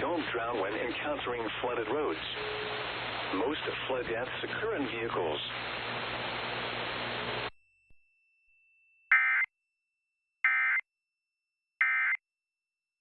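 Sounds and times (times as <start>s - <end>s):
broadcast static hiss: 0.0s - 7.5s.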